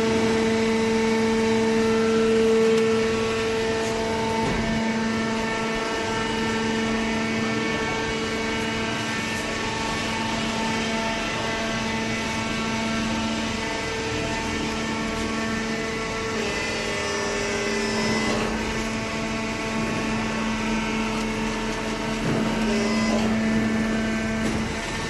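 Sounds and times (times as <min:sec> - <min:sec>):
baler machine mechanical hum: 0:00.0 - 0:25.0.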